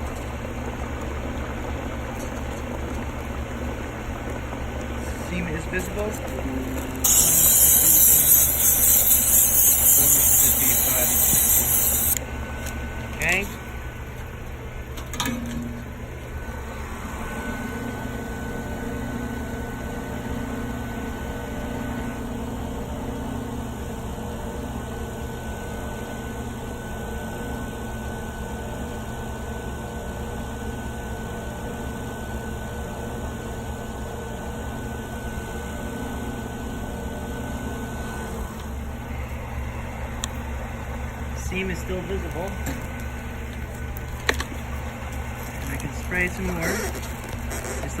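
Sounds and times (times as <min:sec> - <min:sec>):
vacuum pump humming: 0:00.0 - 0:15.1, 0:37.8 - 0:48.0
faint thin high whine: 0:07.0 - 0:12.2.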